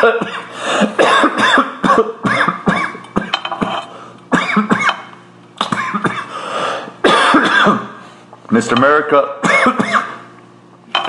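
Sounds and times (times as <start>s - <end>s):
man coughing hard: 0.0s - 6.4s, 7.0s - 8.0s, 9.4s - 10.2s.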